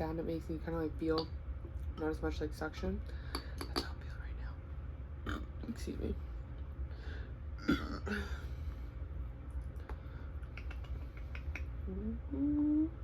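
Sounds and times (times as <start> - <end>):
chewing with wet mouth clicks: 9.6 - 11.8
person humming: 11.8 - 13.0.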